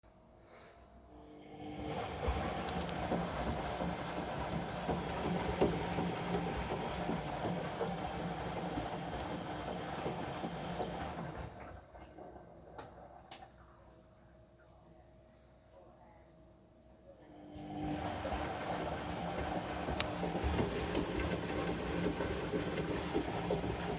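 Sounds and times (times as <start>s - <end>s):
washing machine drum rumbling: 1.8s - 12.4s, 17.7s - 23.9s.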